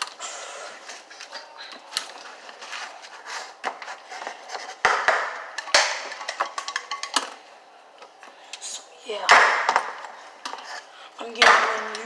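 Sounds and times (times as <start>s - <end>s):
toy pots and utensils clattering: 3.8s - 7.4s.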